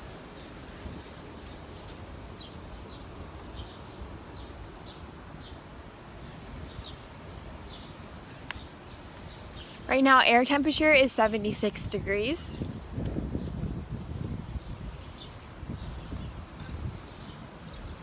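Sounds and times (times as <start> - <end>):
wind on microphone: 0.0 - 9.9, 10.7 - 18.0.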